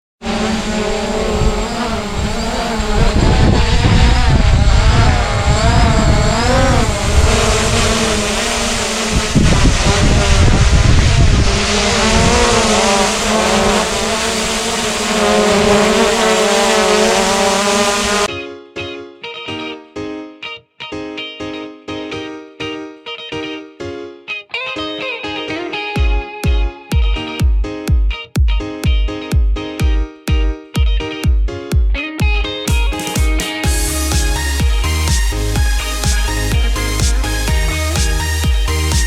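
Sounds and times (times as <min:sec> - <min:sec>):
drone motors whining: 0:00.3 - 0:18.3, 0:33.6 - 0:39.0
wind buffeting microphone: 0:01.0 - 0:18.3.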